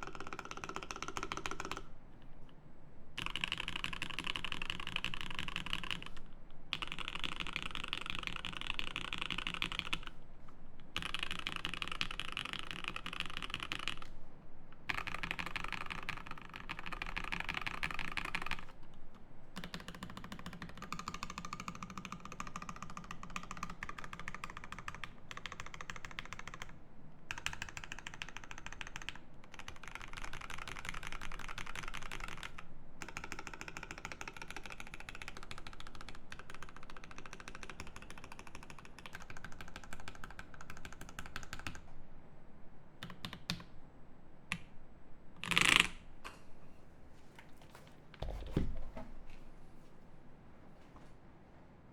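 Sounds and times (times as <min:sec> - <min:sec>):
fast typing on mechanical keyboard: 0:00.0 - 0:01.9, 0:03.2 - 0:10.1, 0:11.0 - 0:14.1, 0:14.9 - 0:18.8, 0:19.6 - 0:26.7, 0:27.3 - 0:41.8, 0:43.0 - 0:43.6, 0:45.4 - 0:46.0.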